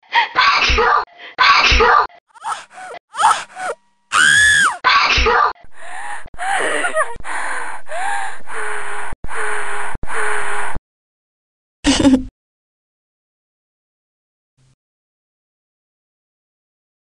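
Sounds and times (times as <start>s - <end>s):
short breathy cries: 2.4s - 4.8s
woman squealing: 2.4s - 5.0s.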